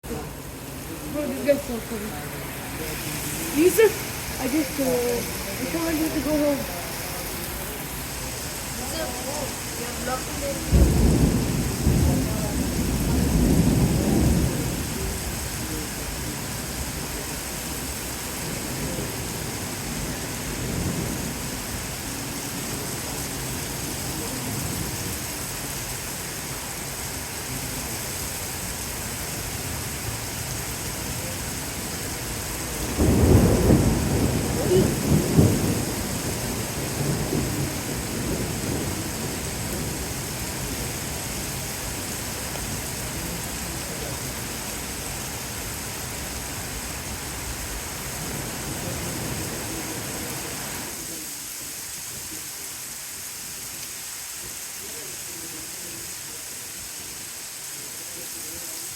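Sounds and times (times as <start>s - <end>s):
steady rain falling: 0.0s - 58.9s
thunder rumbling: 8.7s - 17.2s, 18.3s - 25.3s, 31.2s - 44.6s.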